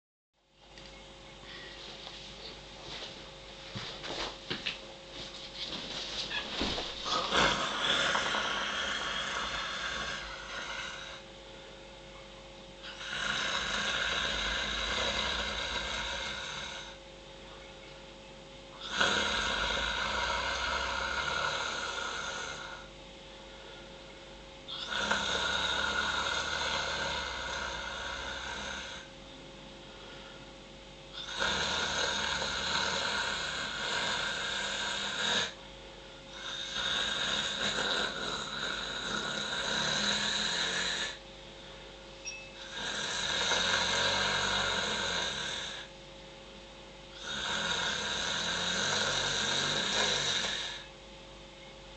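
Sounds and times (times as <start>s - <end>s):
person snoring: 7.0s - 11.3s, 12.8s - 17.0s, 18.8s - 22.9s, 24.7s - 29.2s, 31.1s - 35.6s, 36.3s - 41.2s, 42.6s - 45.9s, 47.1s - 50.9s.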